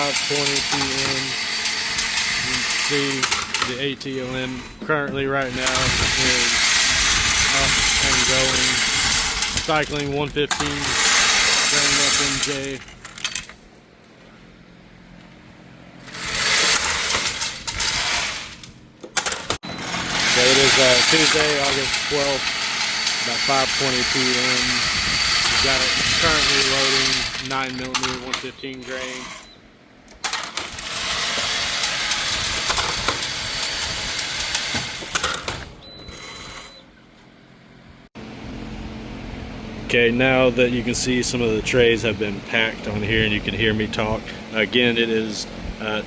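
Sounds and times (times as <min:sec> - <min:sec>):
loud machine noise: 0:00.0 - 0:13.6, 0:16.0 - 0:36.8
faint hum: 0:35.8 - 0:46.0.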